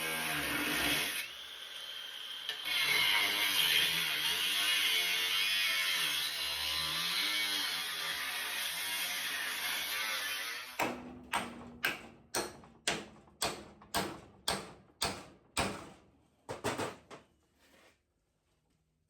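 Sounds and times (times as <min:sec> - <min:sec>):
hammer striking steel: 0:10.8 - 0:16.0.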